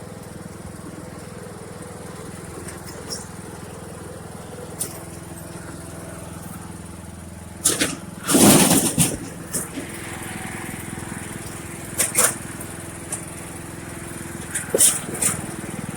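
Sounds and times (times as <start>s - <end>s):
lawn mower engine running: 0.0s - 15.9s
loud clatter: 7.6s - 13.4s.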